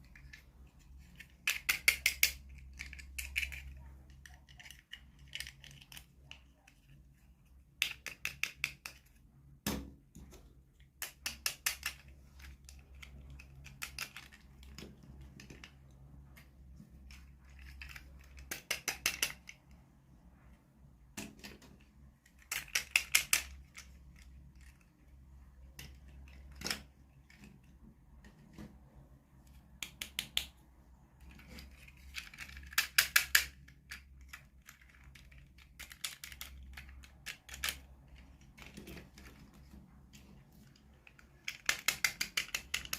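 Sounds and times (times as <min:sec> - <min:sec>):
toy packaging rapid clicks: 0:01.0 - 0:06.4, 0:22.3 - 0:24.9, 0:31.8 - 0:39.2, 0:41.0 - 0:42.9.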